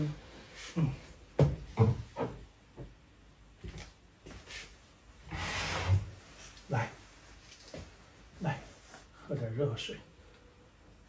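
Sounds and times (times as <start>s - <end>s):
faint handling noises: 6.2s - 9.6s.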